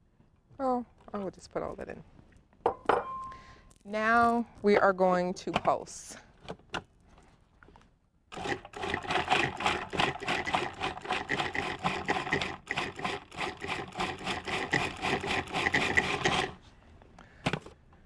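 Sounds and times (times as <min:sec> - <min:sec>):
food processor chopping: 0:08.3 - 0:16.6.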